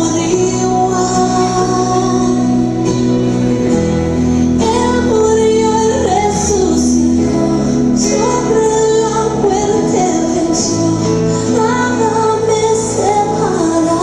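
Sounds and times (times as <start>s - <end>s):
woman singing: 0.0s - 3.4s, 4.4s - 14.0s
band accompaniment: 0.0s - 14.0s.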